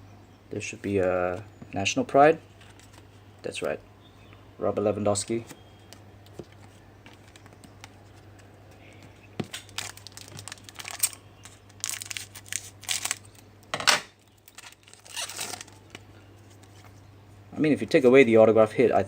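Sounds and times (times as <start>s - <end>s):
foil wrapper tearing and crinkling: 9.4s - 13.4s, 14.3s - 16.0s.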